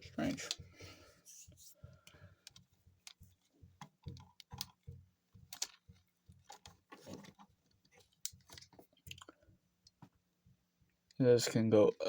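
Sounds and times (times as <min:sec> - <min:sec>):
plastic toy parts clicking: 0:04.1 - 0:04.8, 0:05.5 - 0:05.8.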